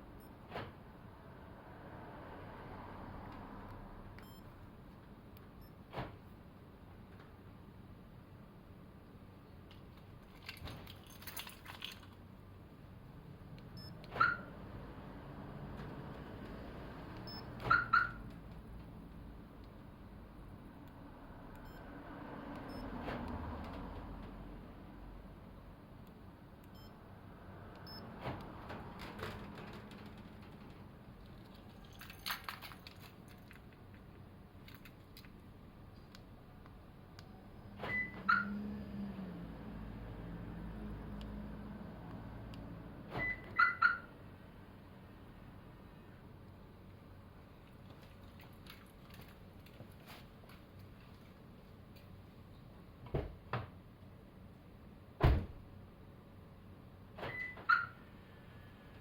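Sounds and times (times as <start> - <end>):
keys rattling: 10.2 - 12.2, 29.0 - 35.4
car alarm beep and chirp: 13.8 - 14.5, 17.3 - 18.2, 37.9 - 38.5, 43.2 - 44.1, 57.3 - 58.0
car door shutting thump: 55.2 - 55.6.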